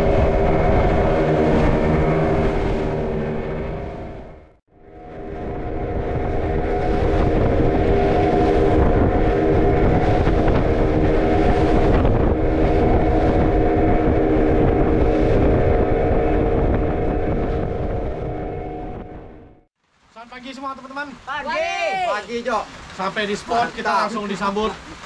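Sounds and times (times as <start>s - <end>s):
water rushing: 0.0s - 18.8s, 19.9s - 25.0s
boat engine running: 0.0s - 19.7s
rushing wind: 0.0s - 19.7s.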